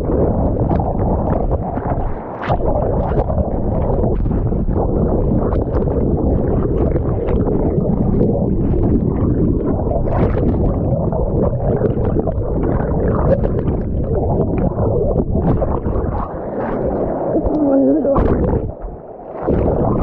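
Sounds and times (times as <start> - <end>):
water splashing: 0.0 - 20.0.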